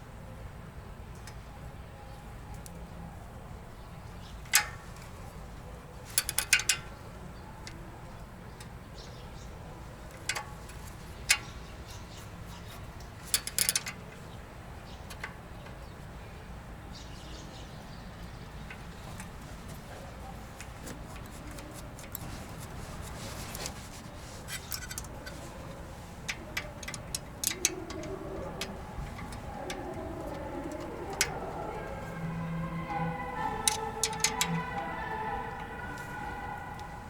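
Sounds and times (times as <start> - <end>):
low steady hum: 22.1 - 37.0.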